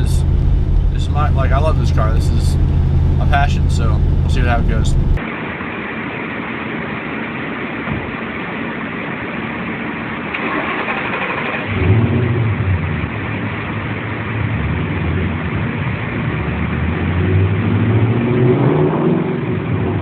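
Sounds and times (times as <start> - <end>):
deep loud engine note: 0.0 - 5.2
car engine rumbling: 0.0 - 20.0.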